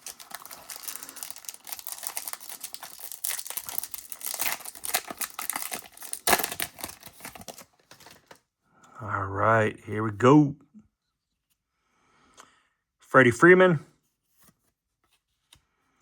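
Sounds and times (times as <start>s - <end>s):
card pack wrapper crinkling: 0.0s - 8.4s
wrapper ripping: 0.0s - 8.4s.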